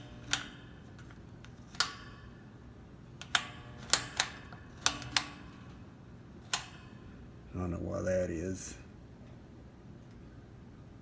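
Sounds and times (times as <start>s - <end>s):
fan knob clicking: 0.0s - 2.4s, 3.2s - 5.8s, 6.5s - 7.0s.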